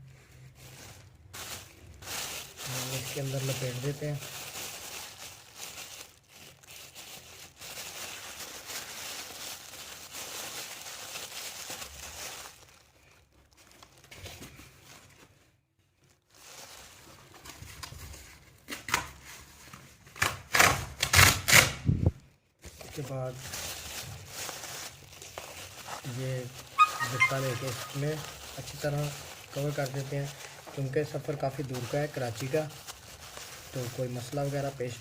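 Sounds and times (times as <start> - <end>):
packing material rustling: 0.0 - 35.0
loud sharp ripping: 20.2 - 21.9.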